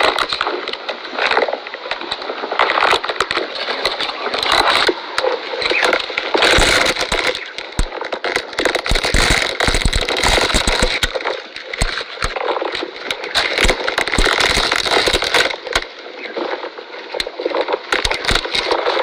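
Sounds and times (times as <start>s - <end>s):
camel chewing crunchily: 1.4s - 19.0s.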